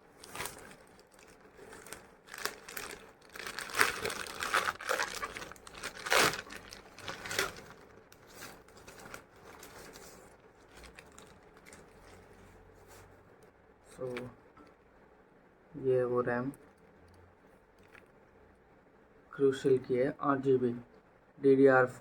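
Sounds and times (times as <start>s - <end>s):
packaging crinkling and tearing: 0.2s - 12.3s.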